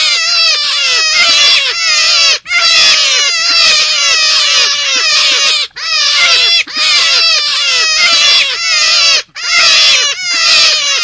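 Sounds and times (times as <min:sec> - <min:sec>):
rabbit call squeaky notes: 0:00.0 - 0:11.0.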